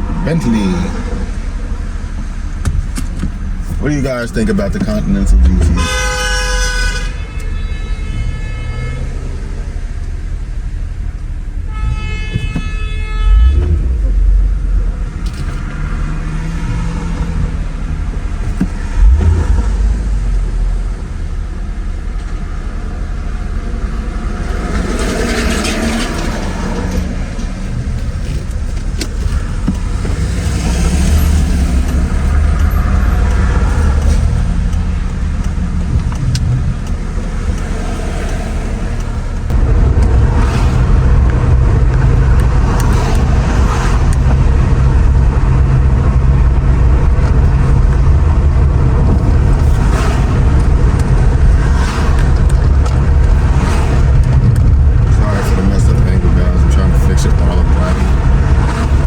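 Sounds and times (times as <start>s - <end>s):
road and engine rumble inside car: 0.0s - 59.0s
car horn: 5.2s - 10.1s, 11.6s - 14.7s.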